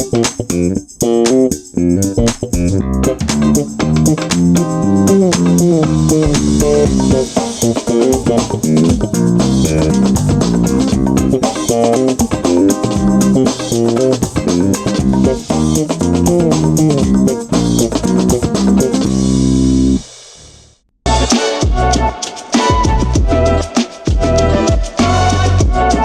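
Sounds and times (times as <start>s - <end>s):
music with bass guitar and drums: 0.0s - 26.0s.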